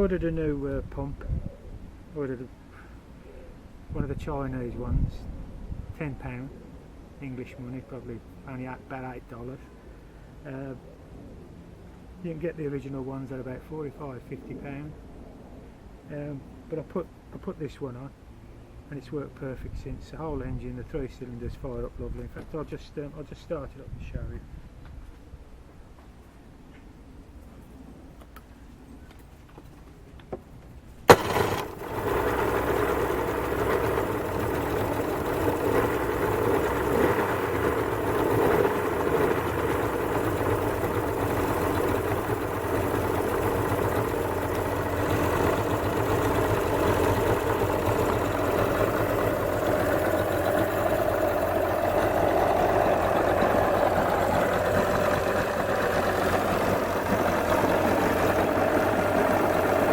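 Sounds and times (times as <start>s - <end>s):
outboard engine running: 31.1s - 59.9s.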